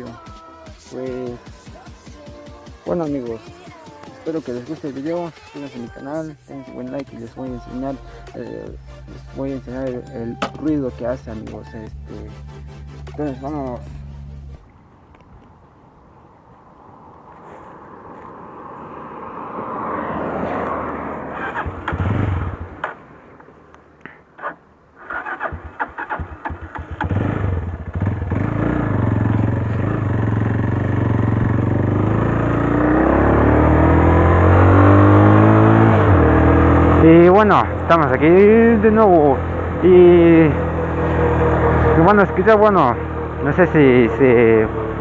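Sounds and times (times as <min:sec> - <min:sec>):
motorcycle engine: 0:19.4 - 0:23.6, 0:24.4 - 0:45.0.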